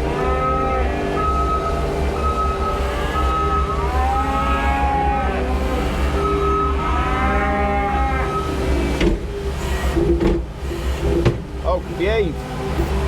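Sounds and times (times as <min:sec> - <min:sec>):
cow mooing: 0:00.0 - 0:09.0
skid steer engine running: 0:00.0 - 0:13.0.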